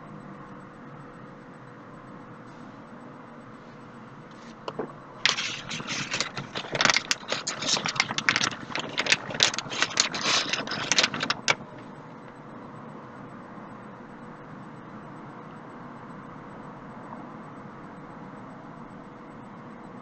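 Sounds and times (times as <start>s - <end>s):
clattering and rattling: 4.7s - 12.1s.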